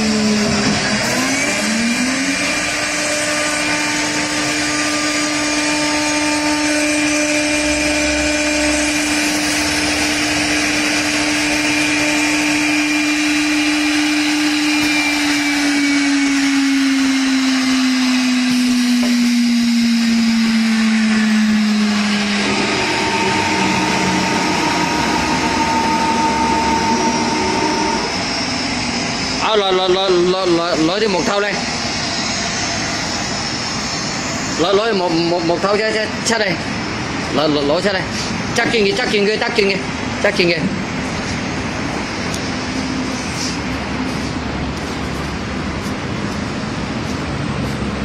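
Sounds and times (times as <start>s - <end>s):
higher motor tone: 0.0s - 37.7s
electric spindle motor whining: 0.0s - 45.5s.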